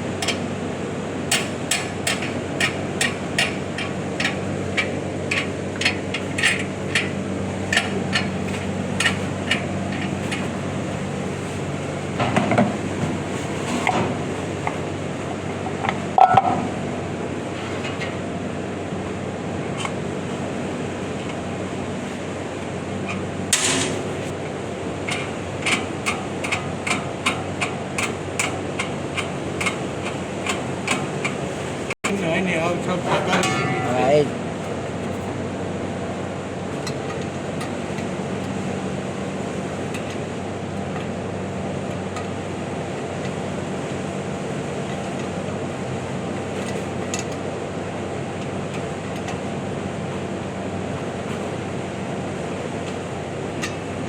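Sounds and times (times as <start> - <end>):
industrial machine hum: 0.0 - 54.0
sharp metallic clatter: 23.5 - 24.3, 33.0 - 34.4.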